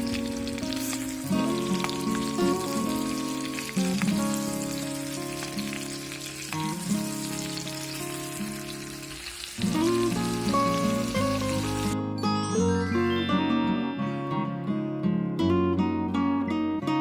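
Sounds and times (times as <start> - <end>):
fine crackle: 0.0 - 12.0
music of held chords: 0.0 - 17.0.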